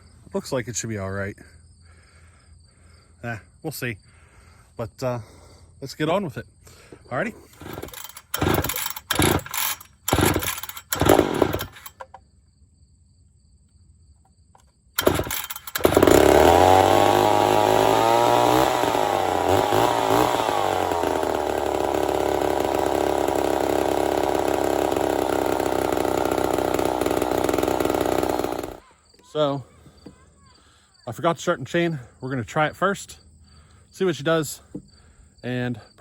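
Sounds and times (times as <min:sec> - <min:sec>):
chainsaw running at high revs: 0:07.5 - 0:12.0, 0:15.0 - 0:28.8.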